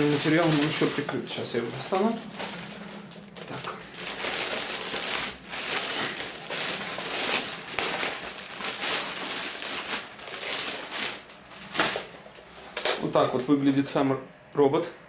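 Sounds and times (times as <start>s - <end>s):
cellophane crinkling: 0.0s - 12.2s.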